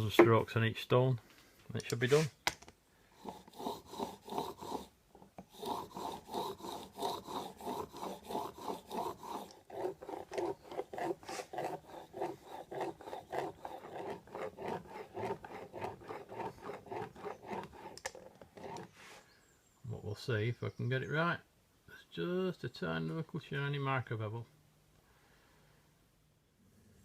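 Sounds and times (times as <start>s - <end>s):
blade rubbing on sharpening stone: 5.5s - 18.9s.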